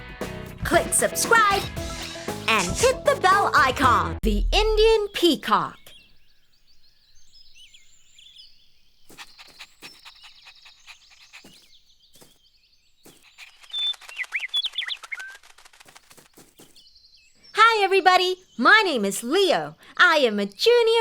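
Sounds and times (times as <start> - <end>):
small birds chirping and trilling: 4.8 - 21.0.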